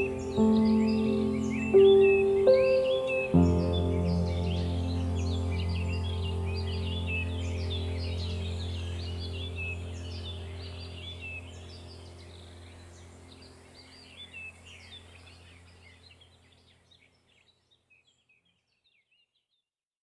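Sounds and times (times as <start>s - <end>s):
steady low hum: 0.0s - 15.9s
small birds chirping: 0.0s - 19.6s.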